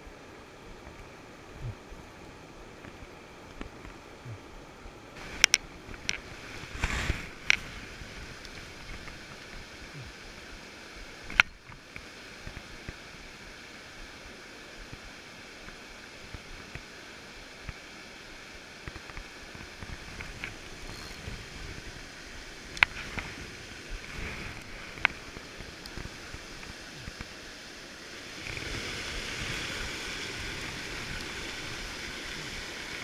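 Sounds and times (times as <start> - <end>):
rushing water: 0.0 - 33.0.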